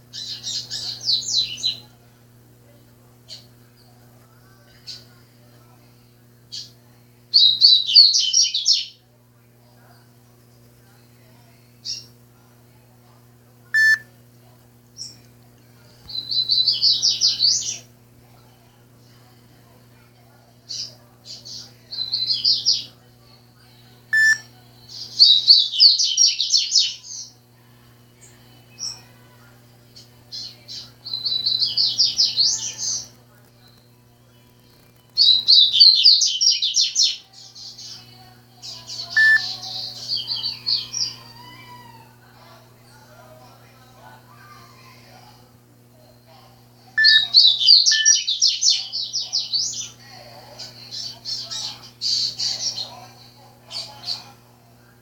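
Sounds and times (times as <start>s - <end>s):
songbirds singing: 0.0s - 12.9s, 13.8s - 14.1s, 14.9s - 54.7s
steady low hum: 0.0s - 55.0s
brief beep: 13.8s - 14.0s.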